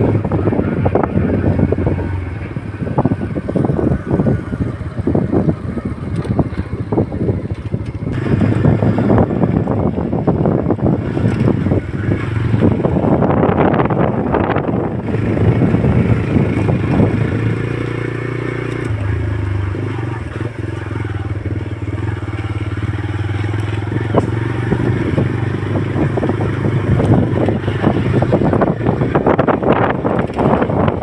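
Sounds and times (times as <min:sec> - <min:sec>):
engine humming: 0:00.0 - 0:31.0
wind noise: 0:00.0 - 0:31.0.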